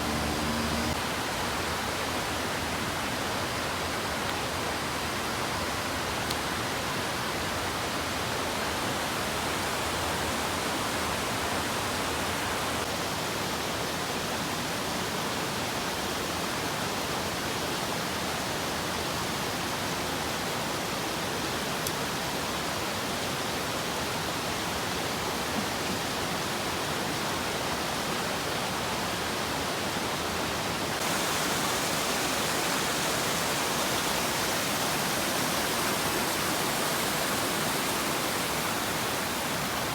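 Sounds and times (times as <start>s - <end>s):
waterfall rushing: 0.0s - 1.2s, 30.2s - 39.9s.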